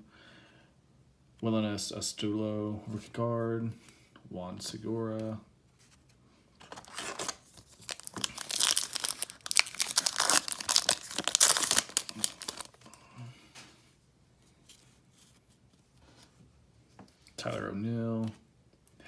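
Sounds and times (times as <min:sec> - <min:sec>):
foil wrapper tearing and crinkling: 0:06.7 - 0:12.9.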